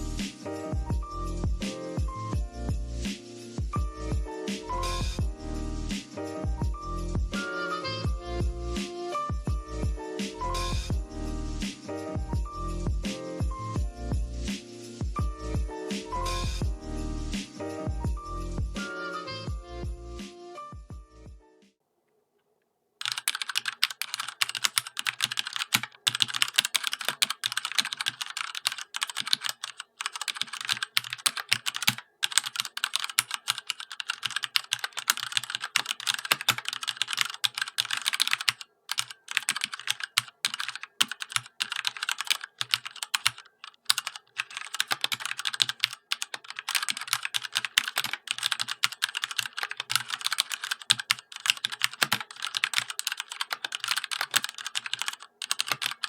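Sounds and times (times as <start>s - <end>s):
fast typing on mechanical keyboard: 23.0s - 56.0s.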